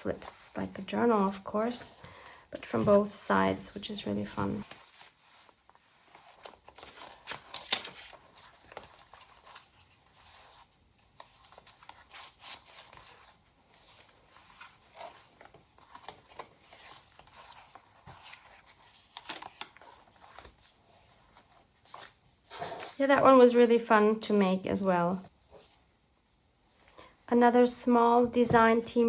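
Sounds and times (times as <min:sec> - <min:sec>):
paper pages rustling: 0:02.6 - 0:23.5.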